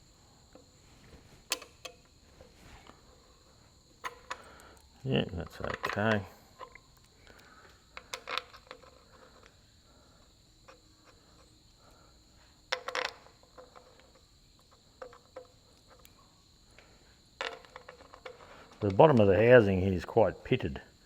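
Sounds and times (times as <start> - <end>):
insect drone: 0.0 - 21.0
metal tools clicking and knocking: 1.5 - 2.1, 5.5 - 7.4, 8.0 - 9.5.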